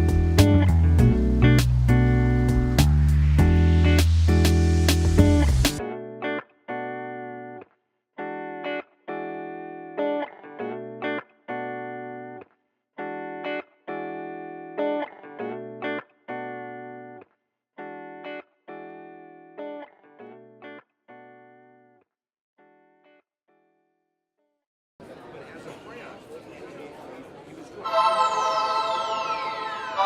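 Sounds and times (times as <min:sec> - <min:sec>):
guitar playing chords: 0:00.0 - 0:17.2, 0:17.8 - 0:22.0, 0:27.8 - 0:30.0.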